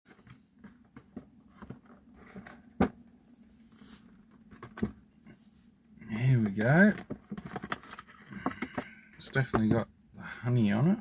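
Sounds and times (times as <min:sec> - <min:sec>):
packaging rustling and clicking: 0:06.8 - 0:08.8.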